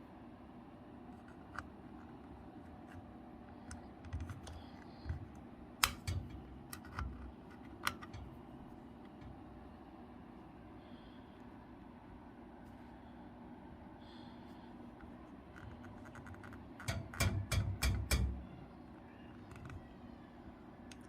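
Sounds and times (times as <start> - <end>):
clicks and knocks on metal safe: 16.9 - 18.4.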